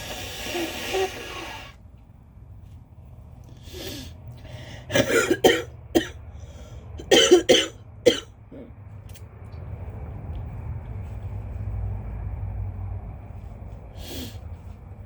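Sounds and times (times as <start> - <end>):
person breathing in: 0.0 - 1.8, 3.6 - 4.9
person coughing wetly: 4.9 - 6.2, 7.0 - 8.7.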